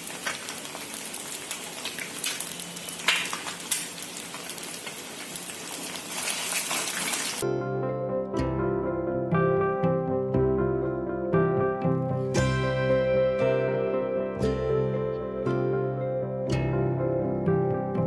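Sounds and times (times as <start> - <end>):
eggs sizzling in hot oil: 0.0 - 7.4
plucked-string music: 7.4 - 18.0.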